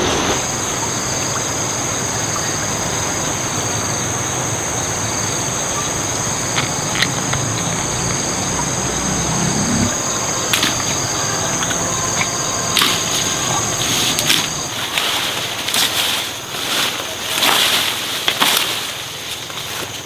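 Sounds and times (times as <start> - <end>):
high-pitched insect drone: 0.0 - 18.9
sharp clicks: 6.2 - 8.3.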